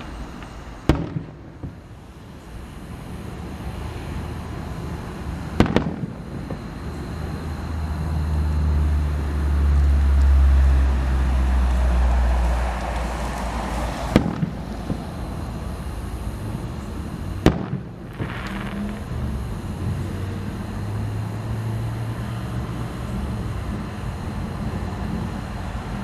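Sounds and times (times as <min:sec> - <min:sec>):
fireworks bangs: 0:00.0 - 0:06.8, 0:11.7 - 0:19.7.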